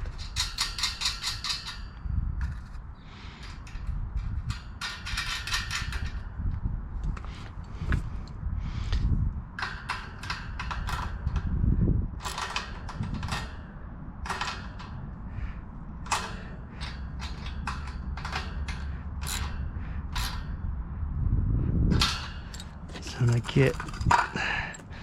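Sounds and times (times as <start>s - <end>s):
hand tools clicking on metal: 0.0s - 1.8s, 12.2s - 13.6s, 16.1s - 20.5s, 22.0s - 25.0s
low rumble: 18.6s - 25.0s.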